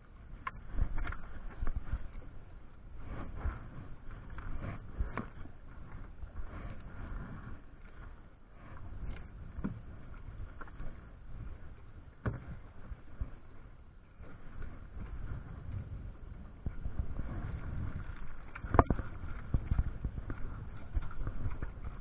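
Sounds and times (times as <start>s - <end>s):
rush of wind and water: 0.0s - 22.0s.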